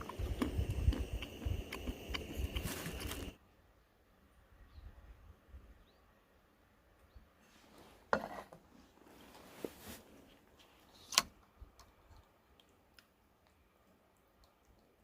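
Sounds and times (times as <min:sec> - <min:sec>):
rustling and scraping: 0:07.4 - 0:11.1.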